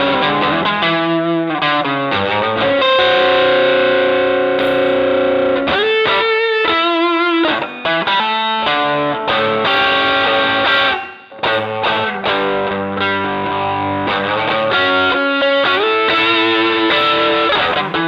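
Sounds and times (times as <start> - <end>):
electric guitar notes: 0.0 - 18.0.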